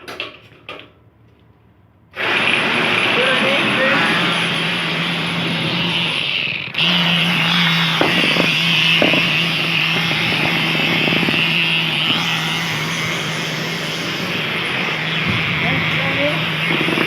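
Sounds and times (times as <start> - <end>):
concrete vibrator buzzing: 2.2 - 17.0.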